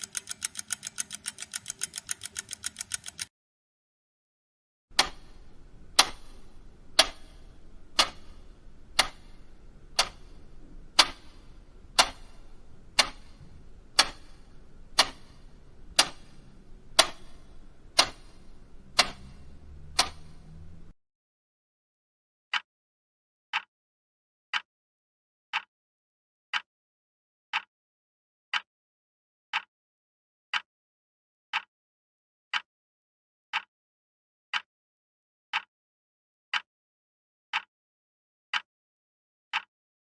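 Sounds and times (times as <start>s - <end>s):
mechanical clock ticking: 0.0s - 3.3s, 4.9s - 20.9s.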